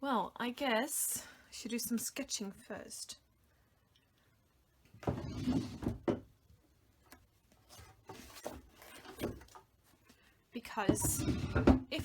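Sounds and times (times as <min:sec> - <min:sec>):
rustling and knocking: 0:05.0 - 0:06.4, 0:10.8 - 0:12.0.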